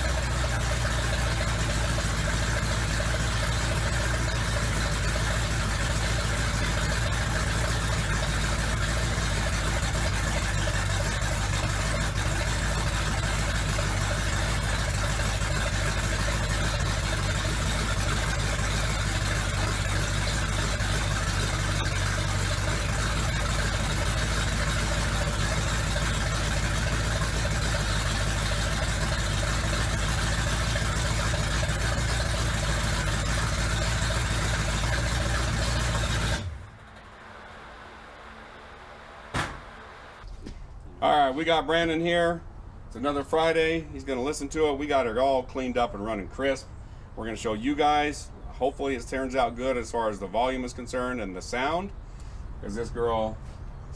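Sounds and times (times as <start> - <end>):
vee eight engine idling: 0.0 - 40.4.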